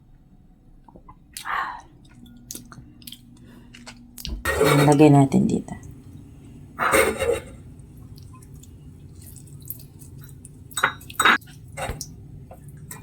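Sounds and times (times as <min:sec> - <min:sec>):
glass clinking: 0:10.8 - 0:11.4.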